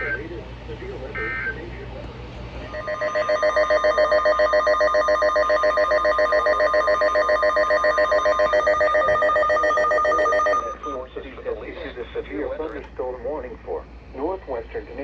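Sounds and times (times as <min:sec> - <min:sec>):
pulsing electronic alert warble: 0:02.7 - 0:10.9.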